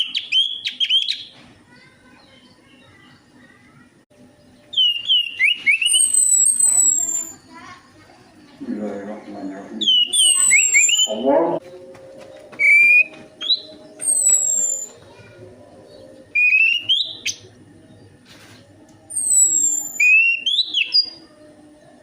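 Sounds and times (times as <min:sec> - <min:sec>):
thrush singing whistled phrases: 0:04.7 - 0:07.4, 0:09.8 - 0:11.3, 0:12.6 - 0:15.0, 0:16.3 - 0:17.4, 0:19.1 - 0:21.2.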